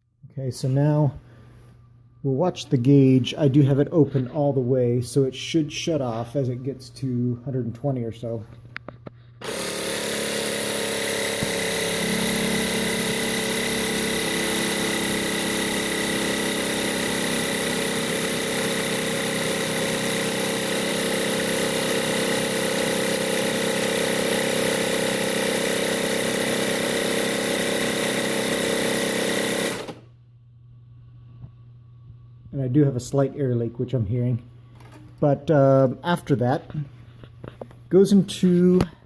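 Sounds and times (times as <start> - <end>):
air compressor running: 8.3 - 30.2.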